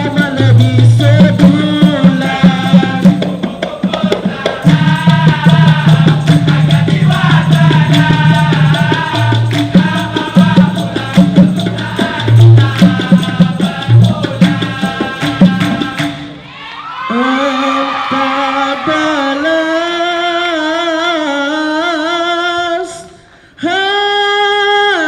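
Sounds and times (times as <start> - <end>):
hand percussion: 0.0 - 16.6
male chorus singing: 0.0 - 23.0.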